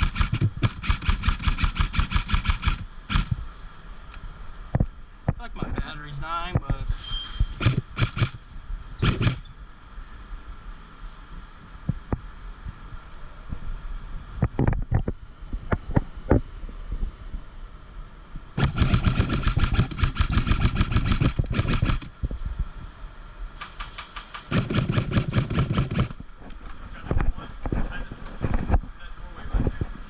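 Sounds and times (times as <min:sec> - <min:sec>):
airsoft gun firing bursts: 0:00.0 - 0:03.4, 0:07.6 - 0:08.4, 0:09.0 - 0:09.5, 0:18.6 - 0:22.1, 0:23.6 - 0:26.2.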